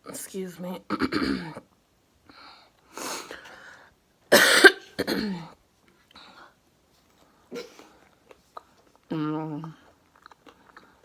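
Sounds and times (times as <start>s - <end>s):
person coughing: 4.3s - 5.5s.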